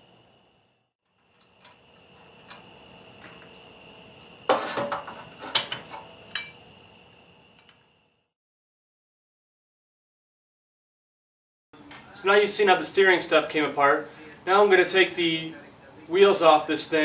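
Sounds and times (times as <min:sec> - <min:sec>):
crickets trilling: 0:00.0 - 0:08.3.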